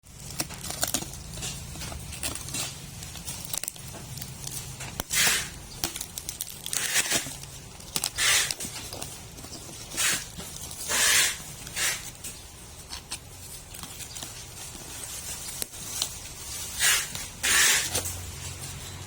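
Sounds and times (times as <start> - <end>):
packaging crackling and clicking: 0.0 - 19.0
packaging ripping: 0.1 - 18.8.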